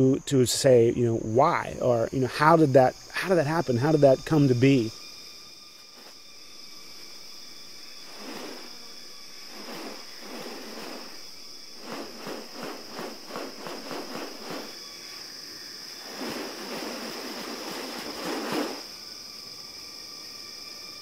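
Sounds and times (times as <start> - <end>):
high insect drone: 0.0 - 21.0
rasping rush: 8.0 - 8.8, 9.4 - 14.8, 16.0 - 18.9.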